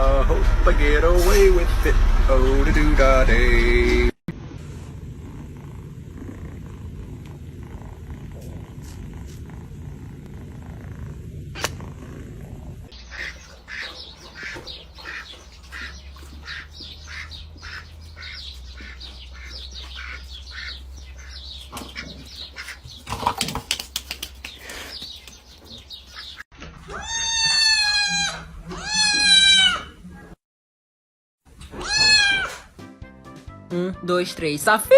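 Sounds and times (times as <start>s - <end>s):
low rumble: 0.0s - 13.0s
cat meowing: 26.9s - 30.0s, 31.7s - 32.7s.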